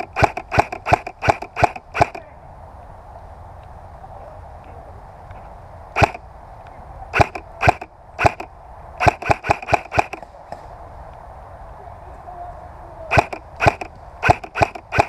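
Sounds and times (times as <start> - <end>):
airsoft gun shots: 0.0 - 2.2, 6.0 - 6.2, 7.2 - 10.2, 13.1 - 15.0.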